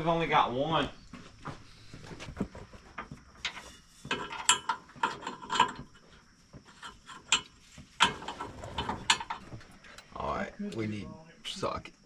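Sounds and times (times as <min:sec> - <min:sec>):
metal tools clinking: 0:03.4 - 0:10.1.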